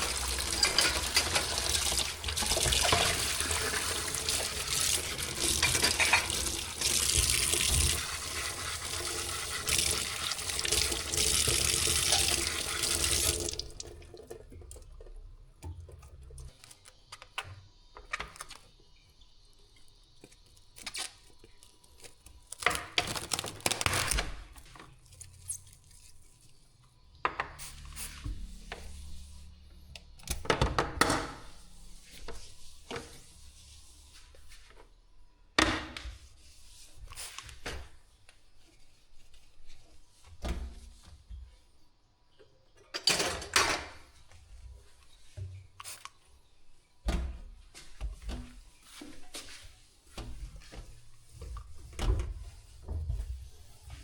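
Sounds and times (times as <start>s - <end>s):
tap water running into sink: 0.0s - 16.3s.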